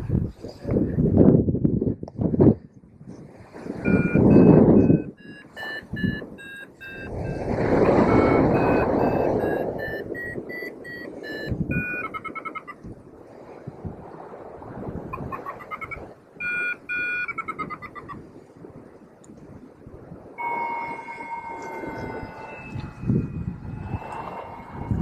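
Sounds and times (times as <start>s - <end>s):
wind rushing over microphone: 0.0s - 25.0s
variometer beeping: 3.8s - 13.0s, 15.2s - 18.1s, 20.4s - 25.0s.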